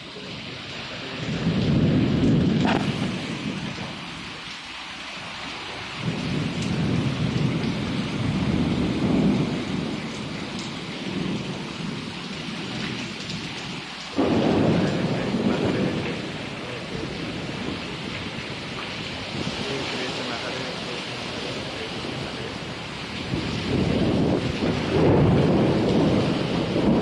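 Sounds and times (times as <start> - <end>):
thunder rumbling: 0.0 - 4.6, 5.2 - 27.0
heavy rain: 0.0 - 27.0
thunder crack: 1.2 - 4.5, 6.0 - 13.5, 14.1 - 20.9, 23.2 - 27.0.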